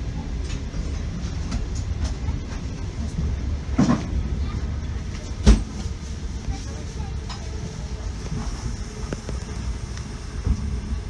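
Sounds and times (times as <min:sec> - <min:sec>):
train carriage rumble: 0:00.0 - 0:11.0
wheels clattering over rails: 0:00.3 - 0:08.6.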